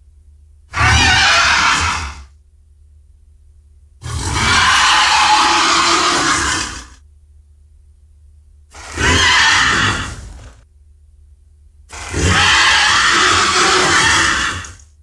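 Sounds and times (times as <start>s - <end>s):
hissy squealing creature calls: 0.7s - 2.3s, 4.0s - 7.0s, 8.8s - 10.6s, 11.9s - 14.8s.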